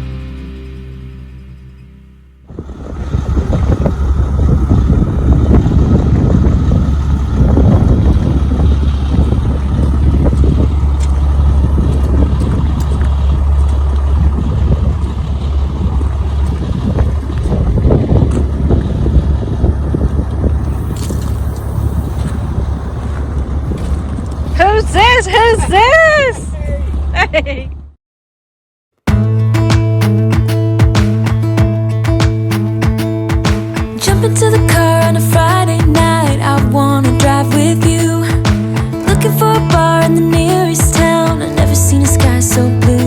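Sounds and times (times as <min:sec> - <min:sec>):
vehicle road rumble: 0:00.0 - 0:28.0, 0:30.1 - 0:43.0
wind buffeting microphone: 0:02.5 - 0:27.4.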